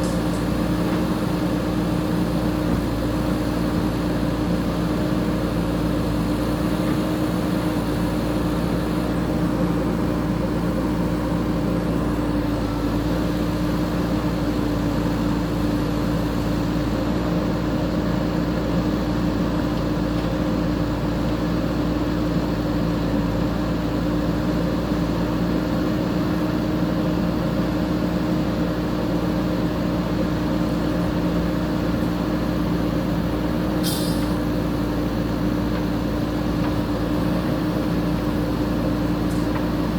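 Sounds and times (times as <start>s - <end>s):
diesel engine running: 0.0s - 39.9s
high hiss: 33.8s - 34.4s.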